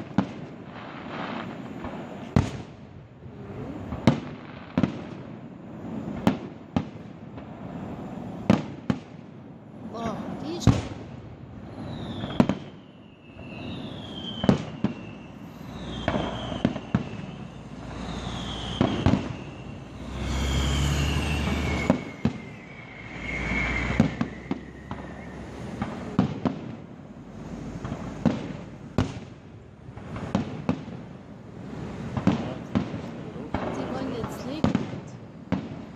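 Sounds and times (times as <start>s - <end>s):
firework bangs: 0.0s - 35.9s
firework whistles falling in pitch: 11.6s - 26.6s
low rumbling: 15.2s - 34.5s.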